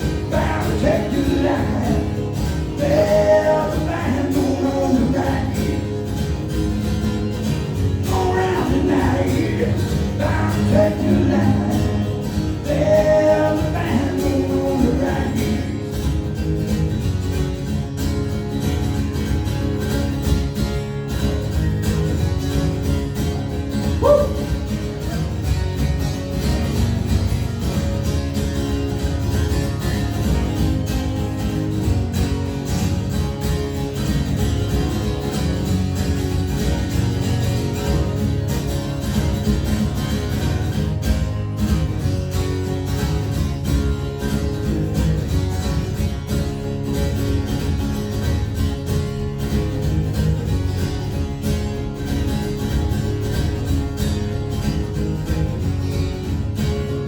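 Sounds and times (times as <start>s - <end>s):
person singing: 0.3s - 6.0s, 8.0s - 15.8s.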